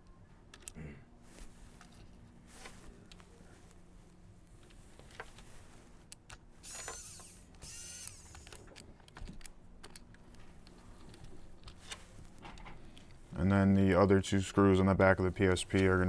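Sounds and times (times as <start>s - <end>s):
screw squeaking: 6.6s - 8.7s.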